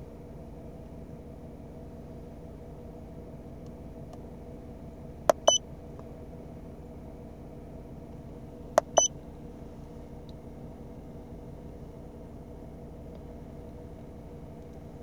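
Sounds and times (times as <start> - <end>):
keypad button click: 5.3 - 5.6, 8.8 - 9.1
short electronic beep: 5.3 - 5.6, 8.8 - 9.1.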